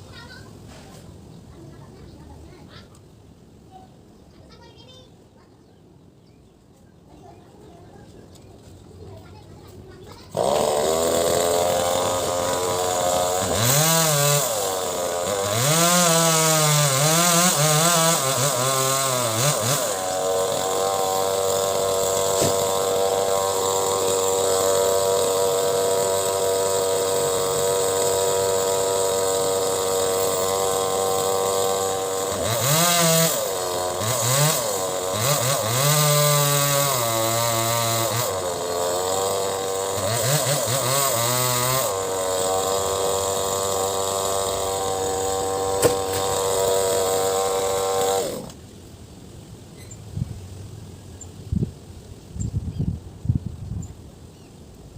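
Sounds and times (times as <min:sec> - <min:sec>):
chainsaw cutting wood: 0:10.3 - 0:48.6.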